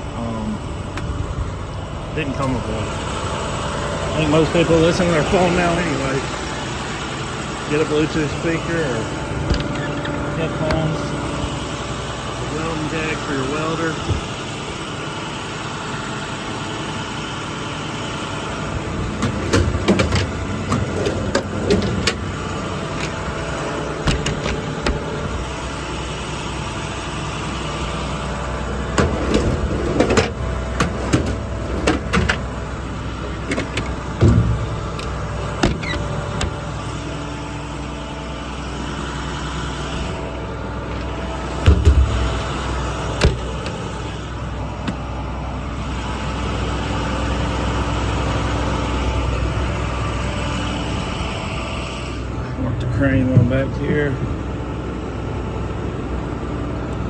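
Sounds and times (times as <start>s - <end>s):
diesel engine idling: 0.0s - 57.0s
clunks and clicks: 9.3s - 11.0s, 19.0s - 25.5s, 28.9s - 32.6s, 33.2s - 36.8s, 40.8s - 42.4s, 43.2s - 44.0s.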